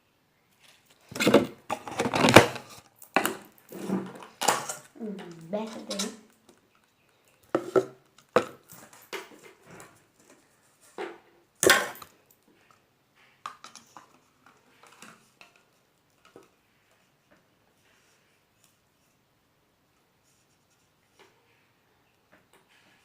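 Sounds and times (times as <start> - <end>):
plastic containers knocking and clicking: 1.0 - 5.8, 7.4 - 9.6.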